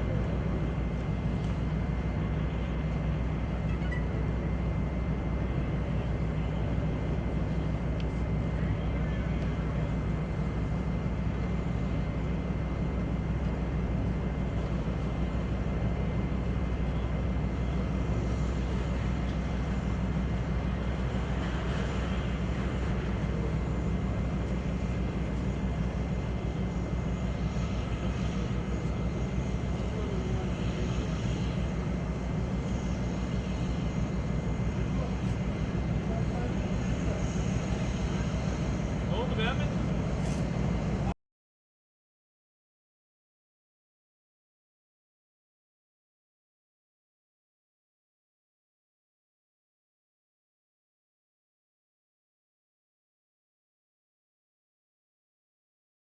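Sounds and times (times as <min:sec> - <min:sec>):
aircraft engine drone in cabin: 0:00.0 - 0:41.2
thin steady whine: 0:00.0 - 0:41.2.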